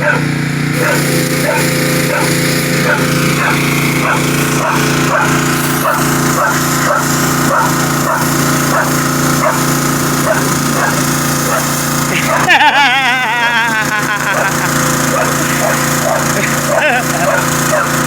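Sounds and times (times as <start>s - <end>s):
dog barking: 0.0s - 12.6s, 14.3s - 18.0s
loud machine hum: 0.0s - 18.0s.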